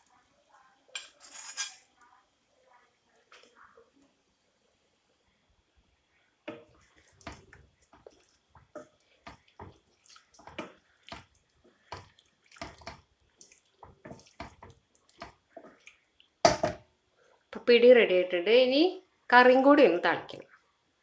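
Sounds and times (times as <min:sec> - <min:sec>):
spoon stirring in a pot: 0:00.9 - 0:02.1, 0:06.5 - 0:16.8.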